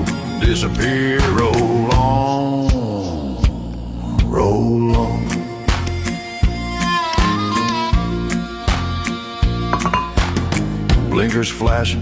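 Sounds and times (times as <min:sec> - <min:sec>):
sliding fiddle or guitar melody: 0:00.0 - 0:02.0, 0:04.8 - 0:11.2
steady drum beat: 0:00.0 - 0:08.3
bass line: 0:00.0 - 0:12.0.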